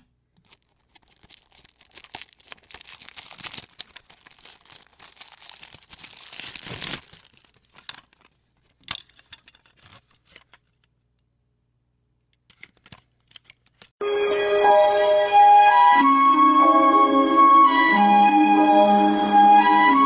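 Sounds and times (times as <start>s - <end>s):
packaging torn and crinkled: 0.4s - 8.4s
music with bell-like notes: 14.0s - 20.0s.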